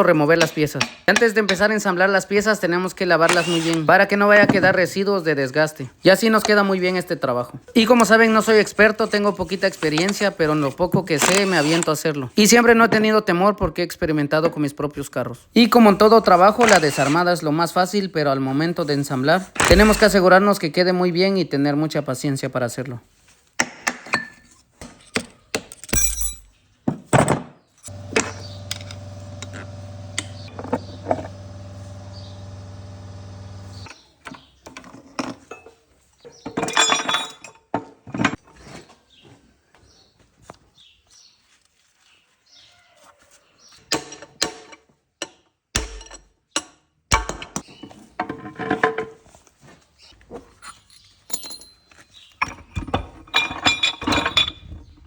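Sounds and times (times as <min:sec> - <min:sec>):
metallic clinks and knocks: 0:25.7 - 0:26.6, 0:50.6 - 0:54.8
steady hum: 0:27.9 - 0:33.9.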